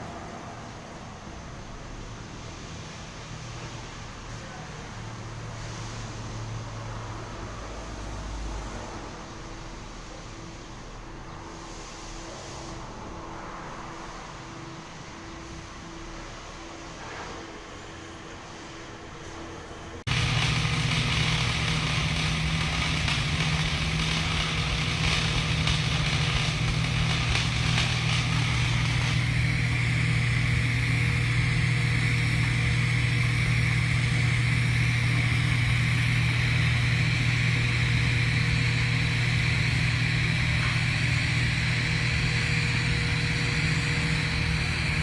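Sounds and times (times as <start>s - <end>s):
welding arc buzzing hum: 20.0s - 45.0s.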